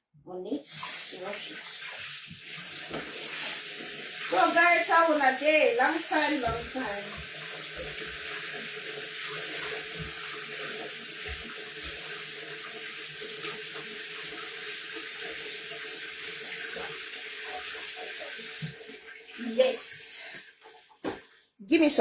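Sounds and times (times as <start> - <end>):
tap running into sink: 1.8 - 19.1.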